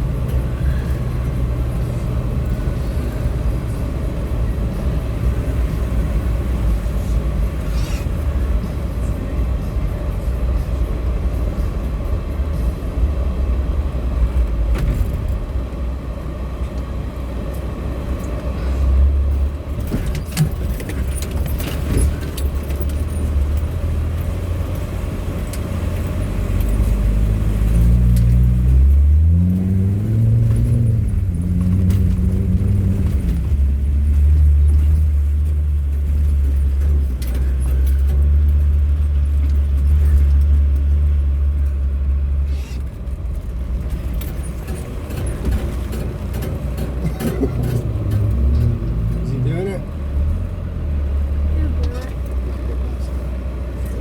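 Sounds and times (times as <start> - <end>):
diesel engine pulling through water: 0.0 - 54.0
vehicle knocks and rattles: 19.2 - 50.6.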